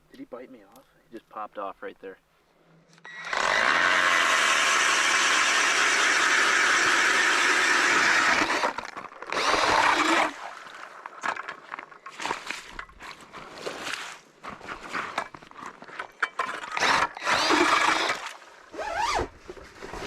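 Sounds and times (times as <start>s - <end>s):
ice auger drilling: 3.1s - 11.6s, 16.3s - 20.0s.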